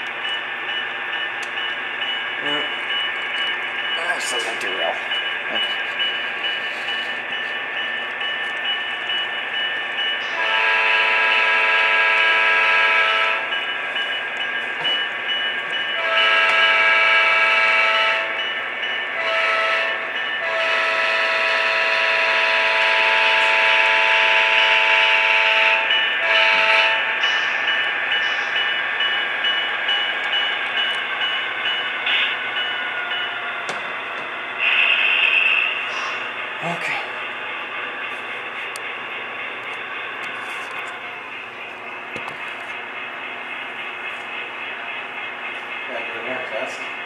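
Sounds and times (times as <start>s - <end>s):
model locomotive engine sound: 0.0s - 47.0s
model locomotive horn: 10.3s - 13.5s, 16.0s - 18.4s, 19.2s - 27.2s.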